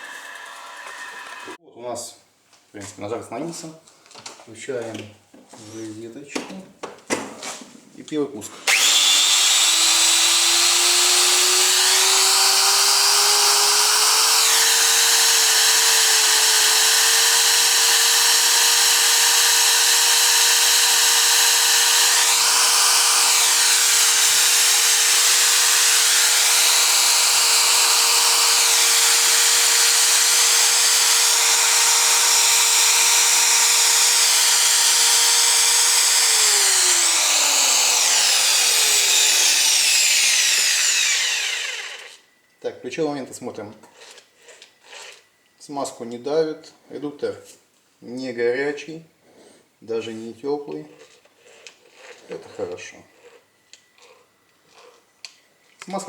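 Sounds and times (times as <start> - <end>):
angle grinder whine: 0.0 - 1.6, 8.6 - 42.3.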